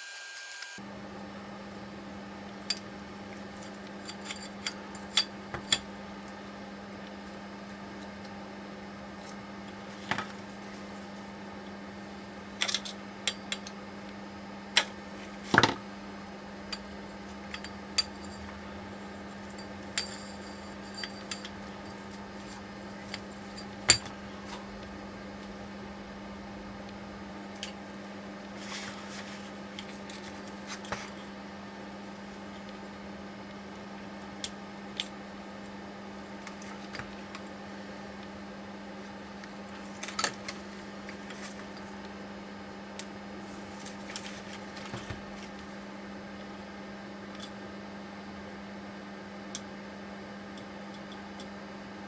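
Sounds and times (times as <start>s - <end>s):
steady low hum: 0.8s - 52.0s
metal parts clinking and knocking: 19.7s - 24.1s.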